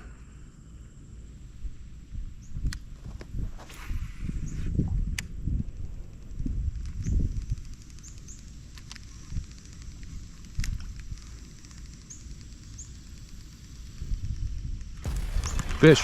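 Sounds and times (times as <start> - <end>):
wind rumble on microphone: 0.6 - 12.0, 13.2 - 16.0
sharp clicks: 15.1 - 16.0.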